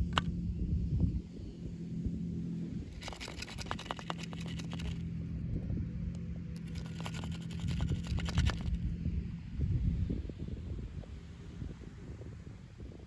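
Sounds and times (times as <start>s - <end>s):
steady low hum: 0.0s - 13.0s
packaging crinkling and scratching: 3.0s - 5.0s.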